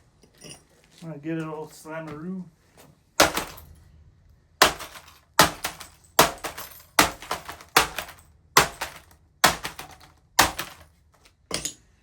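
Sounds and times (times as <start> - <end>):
hard blows smashing a laptop: 3.2 - 3.8, 4.6 - 11.0.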